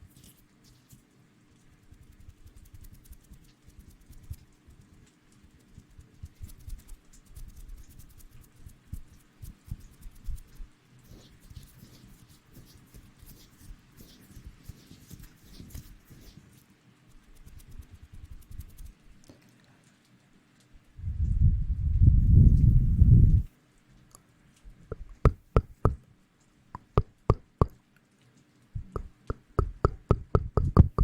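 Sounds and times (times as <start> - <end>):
close rustling and scratching: 0.0 - 21.4.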